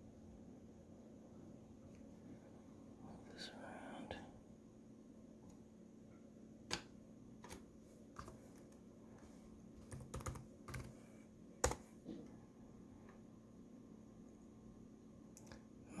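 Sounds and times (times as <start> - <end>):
clicks and taps: 6.7 - 11.0, 11.6 - 12.3.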